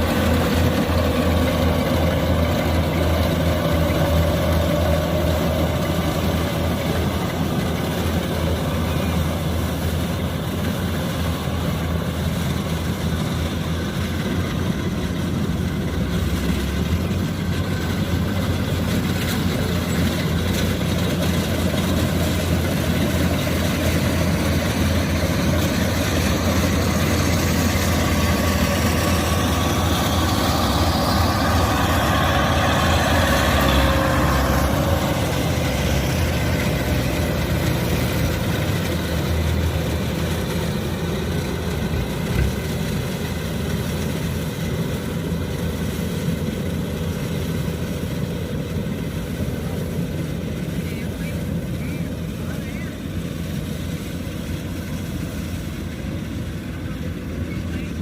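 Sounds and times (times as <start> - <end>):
combine harvester running: 0.0 - 58.0.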